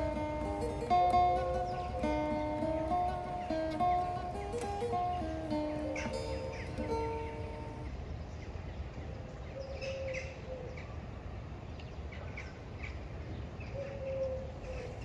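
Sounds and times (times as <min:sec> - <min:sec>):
music: 0:00.0 - 0:07.9
low bird call: 0:00.0 - 0:08.0
birds chirping: 0:00.0 - 0:15.0.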